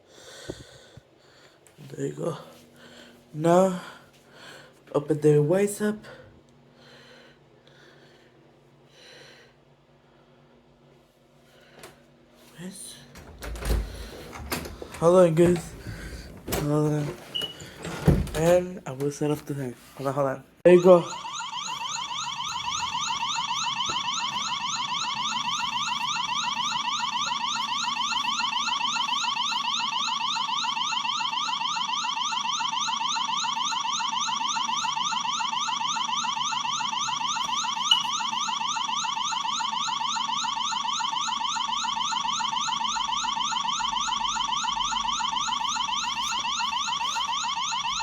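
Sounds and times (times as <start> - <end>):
electronic alarm siren wailing: 20.7 - 48.0.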